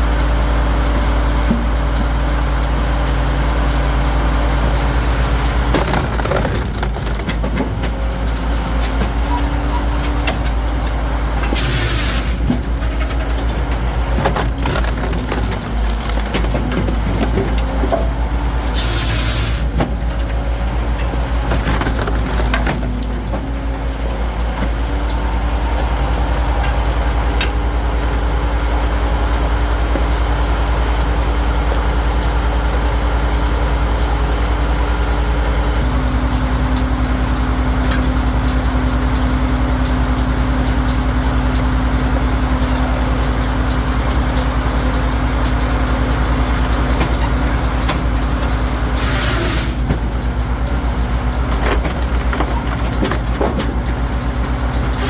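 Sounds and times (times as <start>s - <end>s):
engine running under load: 0.0s - 55.0s
wood crushing and splintering: 4.6s - 10.7s, 11.4s - 24.0s, 47.8s - 55.0s.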